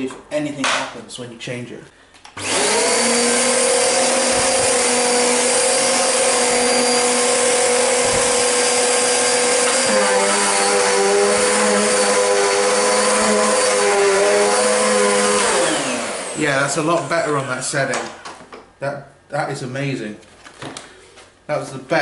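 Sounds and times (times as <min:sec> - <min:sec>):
vacuum cleaner running on carpet: 0:02.4 - 0:16.4.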